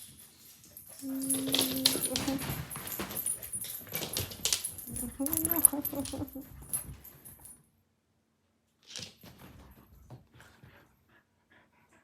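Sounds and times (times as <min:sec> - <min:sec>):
dogs scuffling: 0:00.0 - 0:07.5
collar tags jingling: 0:00.0 - 0:07.6.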